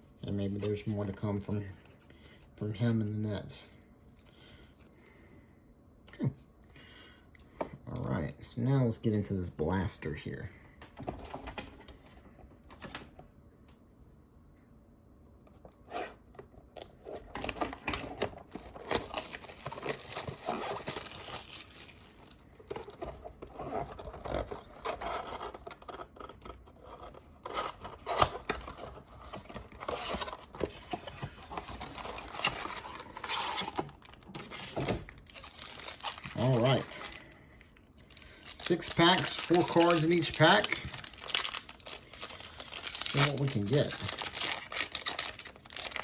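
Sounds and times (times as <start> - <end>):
plastic wrap tearing and crinkling: 16.8 - 22.4, 27.5 - 37.3, 38.0 - 46.0
cardboard scraping and rustling: 22.7 - 37.1.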